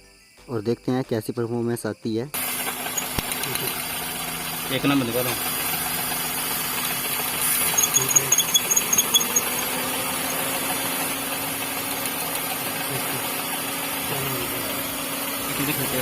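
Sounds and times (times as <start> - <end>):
car engine idling: 2.4 - 16.0
sharp high-pitched clicks: 2.9 - 3.8, 7.6 - 10.4.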